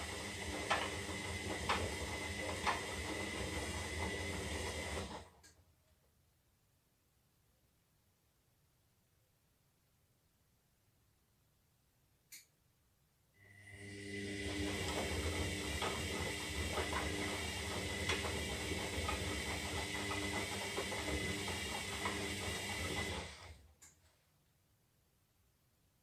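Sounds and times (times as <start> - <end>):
washing machine motor running: 0.0 - 5.3, 13.5 - 23.6.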